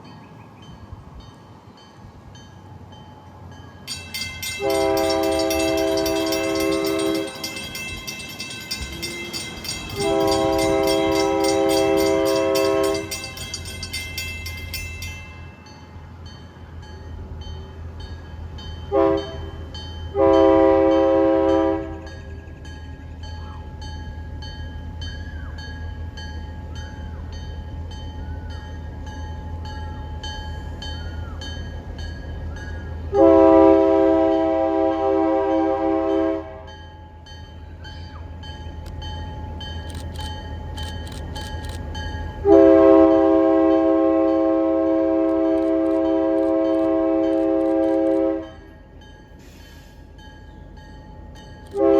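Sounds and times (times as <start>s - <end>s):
locomotive low rumble: 0.0s - 35.2s, 37.3s - 49.4s
locomotive air horn blasts: 4.6s - 7.4s, 9.9s - 13.3s, 18.9s - 22.1s, 33.1s - 36.7s, 42.4s - 48.7s.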